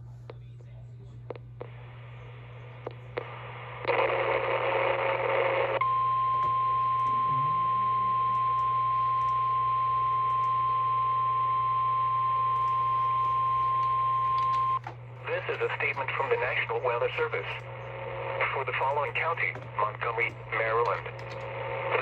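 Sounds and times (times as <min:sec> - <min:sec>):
steady high-pitched alarm tone: 0:05.8 - 0:10.9.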